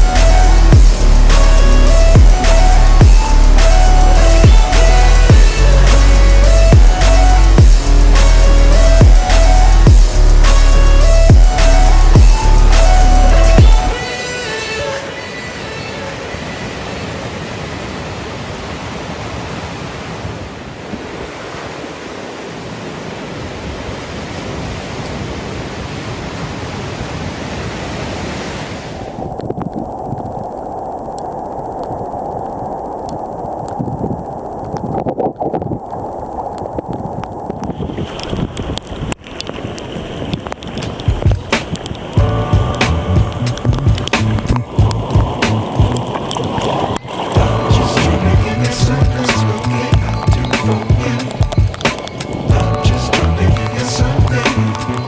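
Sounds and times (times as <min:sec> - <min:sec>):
ocean surf breaking: 0:00.0 - 0:55.0
rushing water: 0:00.0 - 0:55.0
wind on microphone: 0:00.0 - 0:55.0
scattered knocks and clicks: 0:40.6 - 0:46.1, 0:50.0 - 0:52.7.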